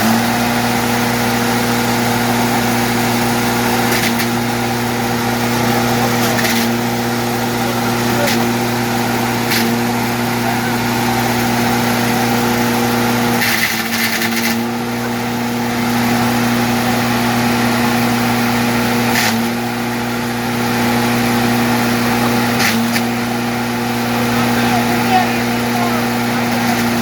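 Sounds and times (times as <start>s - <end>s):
wood chipper motor hum: 0.0s - 27.0s
grinding noise: 23.7s - 27.0s.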